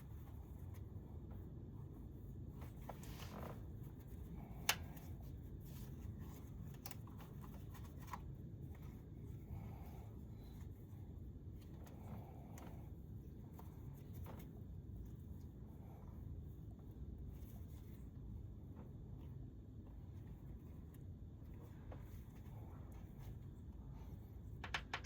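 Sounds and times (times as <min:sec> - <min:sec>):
handling rustles and clicks: 0:02.3 - 0:09.4, 0:24.4 - 0:25.0.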